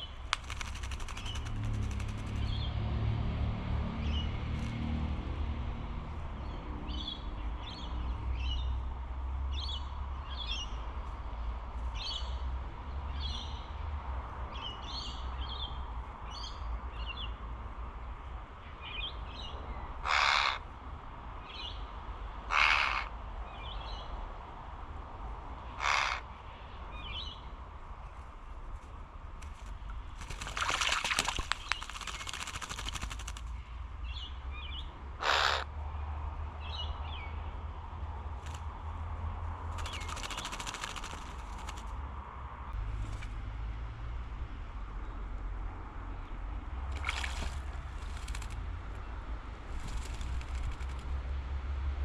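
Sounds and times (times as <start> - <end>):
harsh rasping bird calls: 20.0 - 20.6, 22.5 - 23.1, 25.8 - 26.3, 35.2 - 35.7.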